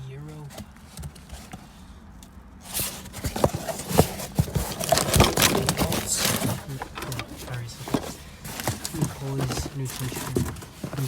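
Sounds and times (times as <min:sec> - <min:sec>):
rustling: 0:00.0 - 0:11.0
parts clicking and knocking: 0:02.2 - 0:11.0.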